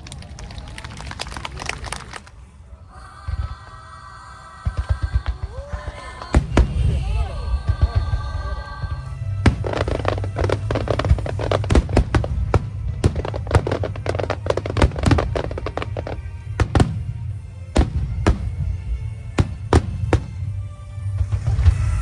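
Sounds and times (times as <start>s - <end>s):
fireworks cracking and banging: 0.0s - 2.3s, 4.6s - 22.0s
music playing: 2.1s - 22.0s.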